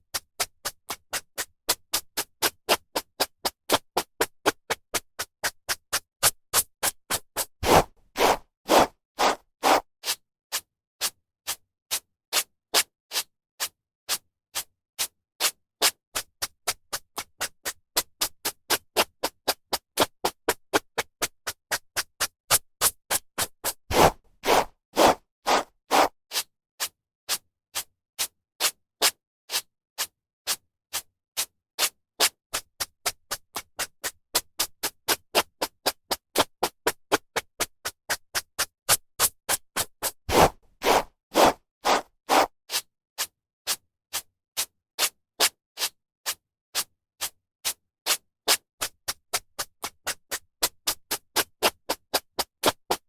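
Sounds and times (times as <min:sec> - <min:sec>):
hairbrush strokes through hair: 0:07.6 - 0:09.8, 0:23.9 - 0:26.1, 0:40.3 - 0:42.5.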